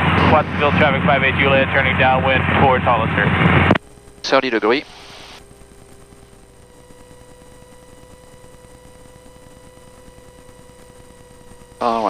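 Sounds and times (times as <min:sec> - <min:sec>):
thin constant hum: 0:00.1 - 0:12.0
faint steady hiss: 0:03.7 - 0:12.0.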